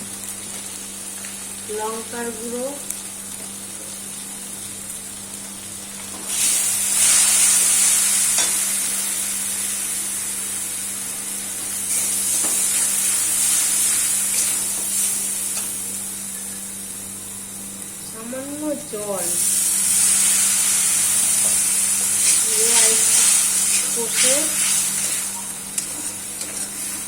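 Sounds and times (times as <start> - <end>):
paste sizzling in oil: 0.0 - 17.9, 19.0 - 27.0
spatula stirring in pan: 21.4 - 27.0.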